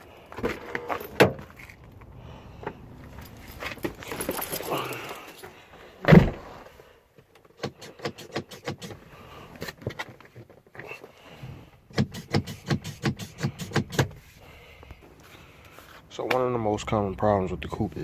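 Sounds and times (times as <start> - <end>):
car door shutting: 6.0 - 6.6.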